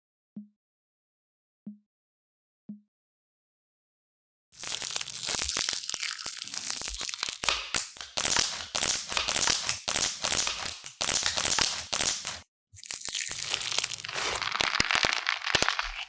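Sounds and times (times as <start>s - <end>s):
material crinkling and crackling: 4.6s - 16.0s.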